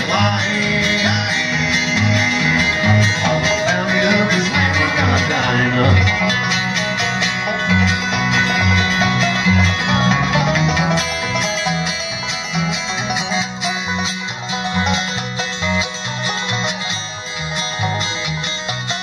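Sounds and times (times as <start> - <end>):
band playing instrumental: 0.0 - 19.0
banjo picking quick notes: 0.0 - 19.0
bass line: 0.0 - 19.0.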